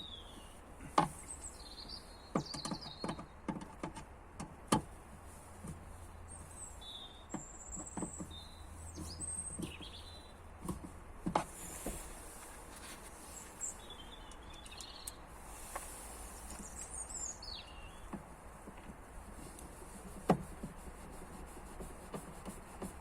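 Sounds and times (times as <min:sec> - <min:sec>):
small birds chirping: 0:00.0 - 0:03.5, 0:05.6 - 0:10.8, 0:11.6 - 0:18.2
light clicks and knocks: 0:01.8 - 0:06.0, 0:07.3 - 0:13.2, 0:18.0 - 0:20.8.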